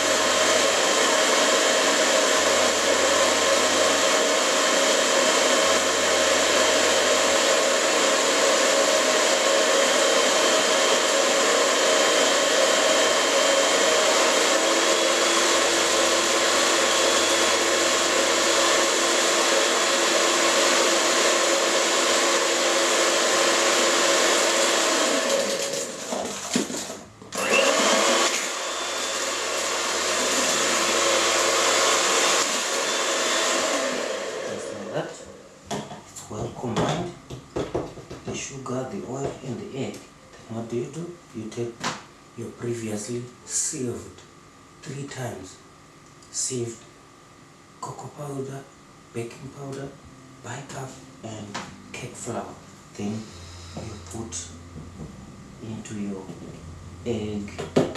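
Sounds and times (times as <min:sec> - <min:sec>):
electric mixer running: 0:00.0 - 0:35.5, 0:51.8 - 0:57.9.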